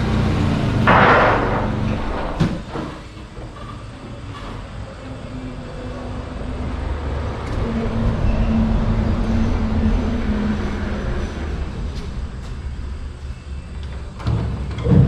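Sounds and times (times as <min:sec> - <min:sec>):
vehicle engine rumble: 0:00.0 - 0:15.0.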